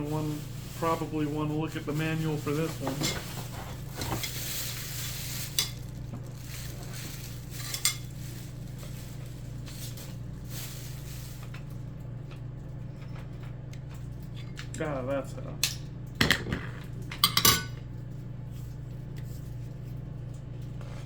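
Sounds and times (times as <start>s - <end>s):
packaging rustling: 0.0s - 11.8s.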